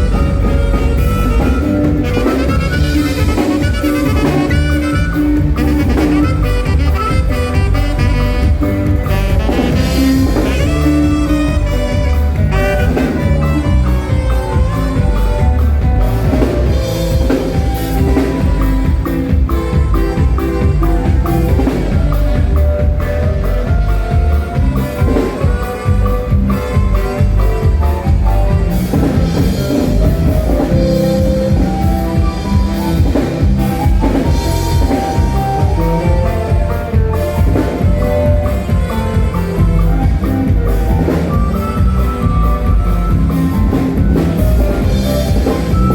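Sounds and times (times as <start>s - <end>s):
bass: 0.0s - 45.9s
drum kit beat: 0.0s - 45.9s
saxophone lead: 0.0s - 45.9s.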